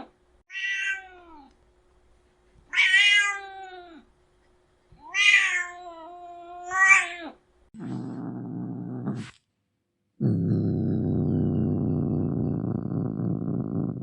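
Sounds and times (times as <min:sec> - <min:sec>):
cat meowing: 0:00.5 - 0:01.5, 0:02.7 - 0:04.0, 0:05.0 - 0:07.3
cat growling: 0:07.8 - 0:09.4, 0:10.2 - 0:14.0.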